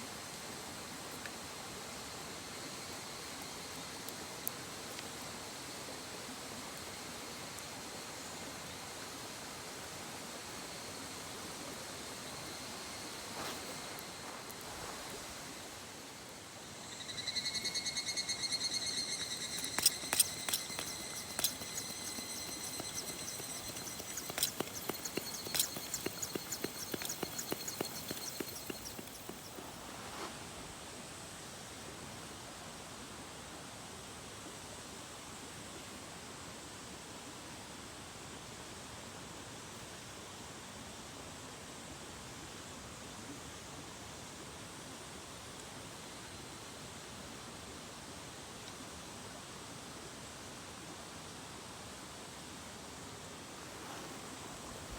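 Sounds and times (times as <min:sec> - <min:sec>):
high ringing animal call: 0:16.9 - 0:29.7
steady rushing hiss: 0:18.8 - 0:30.8.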